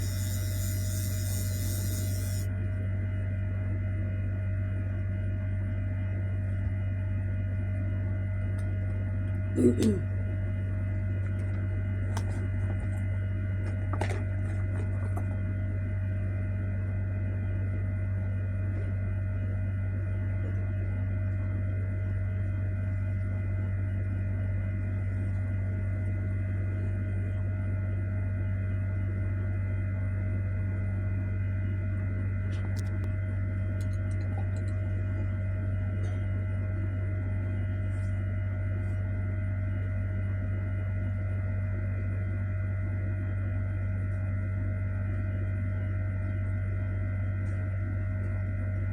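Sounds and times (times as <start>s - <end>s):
hair dryer running: 0.0s - 2.5s.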